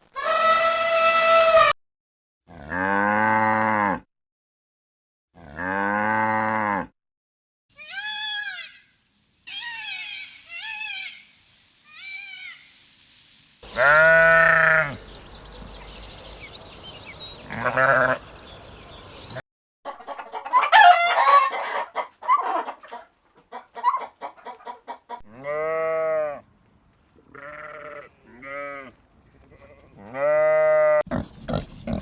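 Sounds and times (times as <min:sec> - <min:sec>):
sheep bleating: 0:13.7 - 0:15.0, 0:17.5 - 0:18.3, 0:27.3 - 0:32.0.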